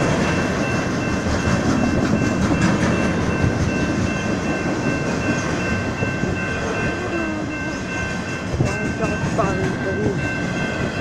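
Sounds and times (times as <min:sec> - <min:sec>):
train cars rattling on rails: 0:00.0 - 0:11.0.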